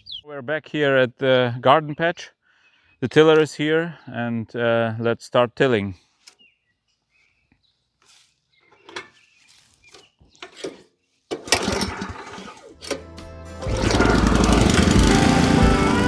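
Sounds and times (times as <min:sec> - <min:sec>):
tiller engine sputtering and running: 0:11.4 - 0:16.0
background music: 0:12.7 - 0:16.0.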